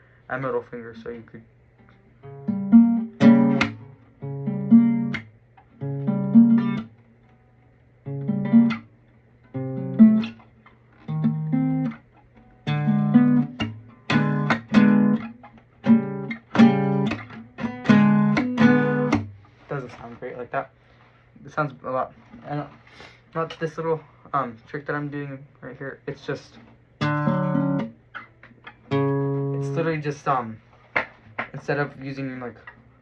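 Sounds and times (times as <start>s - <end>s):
classical guitar chords strummed: 1.9s - 7.0s, 8.0s - 19.5s, 27.0s - 30.0s.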